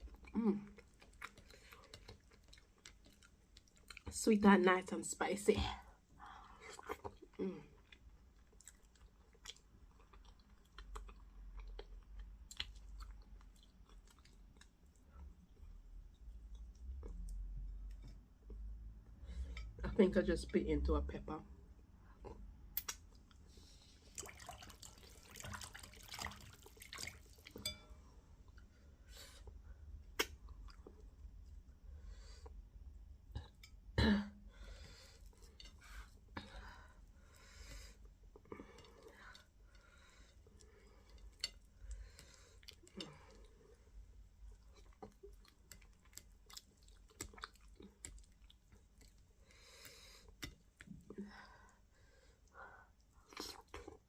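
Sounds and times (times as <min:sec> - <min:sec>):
chewing and lip smacking: 0:00.1 - 0:04.1, 0:06.6 - 0:15.3, 0:44.5 - 0:49.4
wet chewing and squelching: 0:00.2 - 0:04.1, 0:22.2 - 0:27.7, 0:44.4 - 0:51.1
wet mouth clicks: 0:22.2 - 0:23.2.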